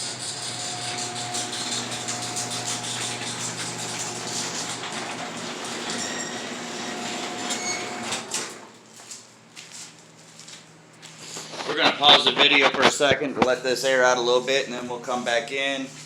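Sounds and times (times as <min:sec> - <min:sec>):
garage door rumbling: 0:00.0 - 0:08.7.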